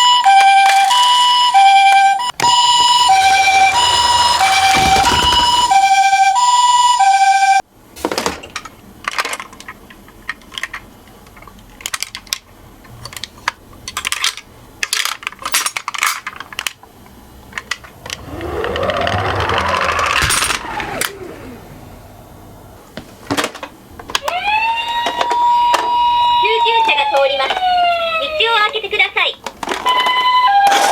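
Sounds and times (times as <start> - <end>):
toy ambulance siren: 0.0 - 7.6, 18.2 - 21.3, 24.2 - 28.6, 29.8 - 30.9
whir rising and falling in pitch: 2.4 - 7.6, 18.0 - 22.8.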